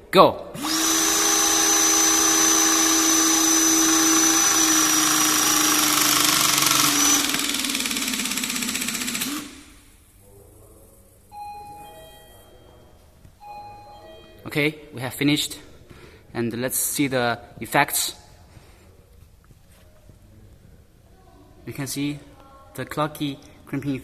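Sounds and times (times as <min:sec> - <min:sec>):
hydraulic crimping tools whining: 0:00.6 - 0:09.9.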